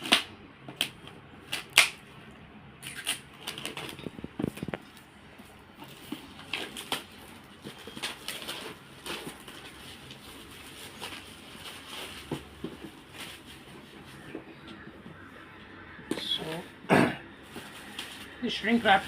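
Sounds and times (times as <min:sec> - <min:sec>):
plastic wrap crinkling and tearing: 0:00.0 - 0:05.1, 0:05.8 - 0:14.2, 0:17.4 - 0:19.0.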